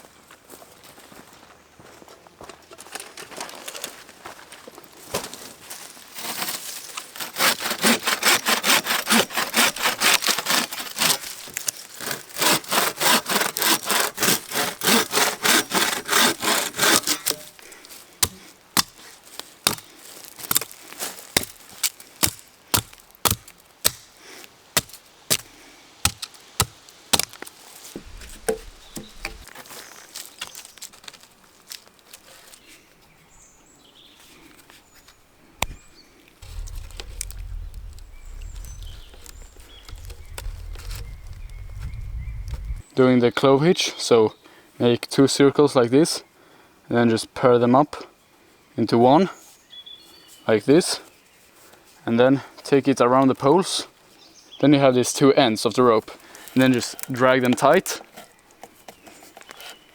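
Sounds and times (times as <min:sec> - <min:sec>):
hand saw cutting wood: 0:06.1 - 0:17.6, 0:28.0 - 0:29.5.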